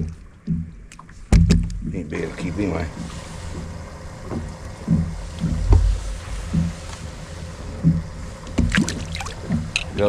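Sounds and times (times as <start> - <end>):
low thumps and knocks on boat: 0.0 - 10.0
rush of wind and water: 8.5 - 9.8.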